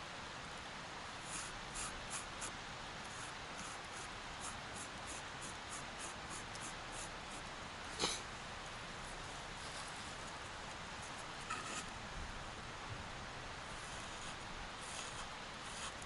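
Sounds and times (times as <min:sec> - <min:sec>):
steady rushing hiss: 0:00.0 - 0:16.0
dry scratching strokes: 0:11.0 - 0:11.9, 0:13.8 - 0:16.0.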